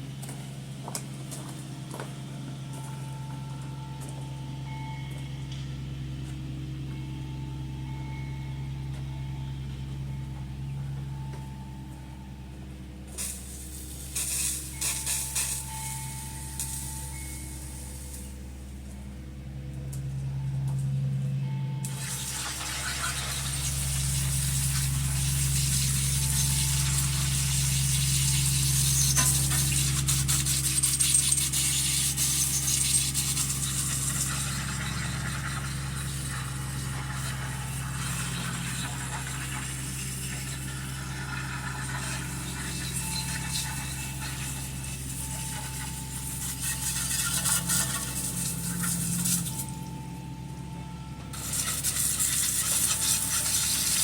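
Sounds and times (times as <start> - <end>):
steady low hum: 0.0 - 54.0
hose spraying water on metal: 13.1 - 17.4, 21.8 - 49.8, 51.3 - 54.0.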